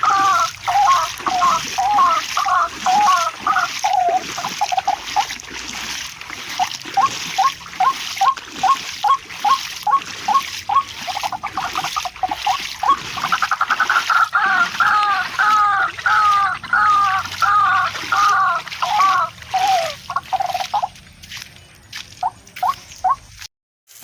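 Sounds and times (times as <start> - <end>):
bird calling rising notes: 0.0 - 5.3, 6.6 - 20.9
splashing water: 0.0 - 24.0.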